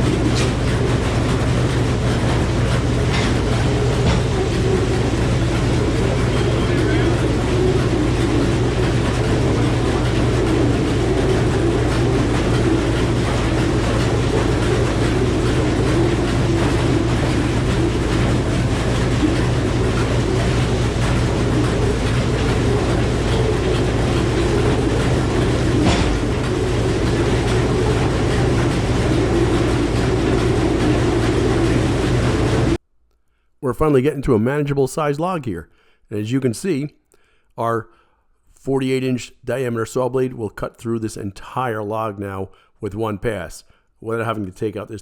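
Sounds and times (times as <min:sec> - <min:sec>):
circular saw blade spinning: 0:00.0 - 0:32.8
sawmill engine running: 0:00.0 - 0:32.8.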